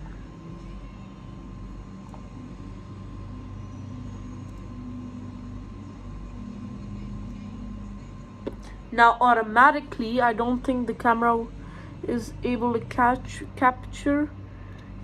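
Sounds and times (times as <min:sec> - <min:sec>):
low rumble and hum: 0:00.0 - 0:15.0.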